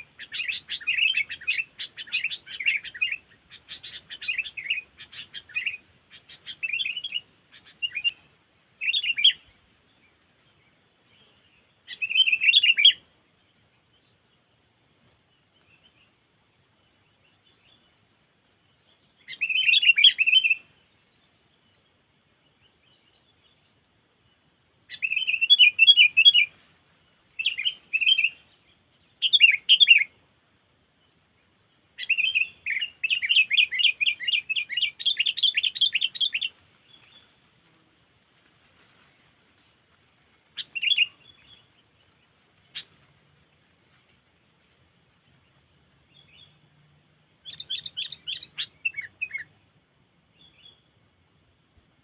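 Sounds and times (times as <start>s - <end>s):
bird singing chattering phrases: 0.0s - 9.5s, 32.0s - 37.1s, 40.5s - 41.8s, 47.4s - 49.5s.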